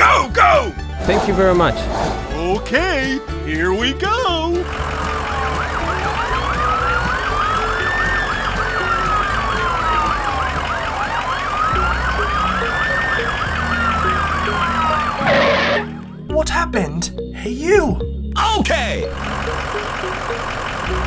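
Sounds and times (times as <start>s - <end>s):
siren wailing: 5.2s - 16.1s
yelping siren: 5.3s - 16.0s.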